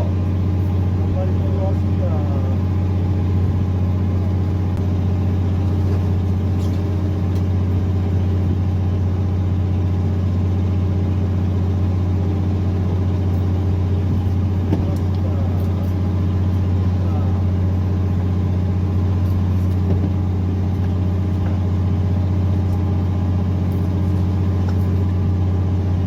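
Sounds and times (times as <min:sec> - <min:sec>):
boat engine droning: 0:00.0 - 0:26.0.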